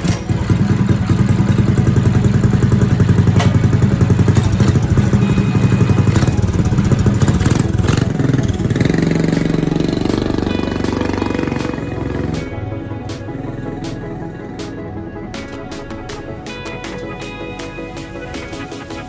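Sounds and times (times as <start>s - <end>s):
small gas engine running: 0.0s - 14.7s.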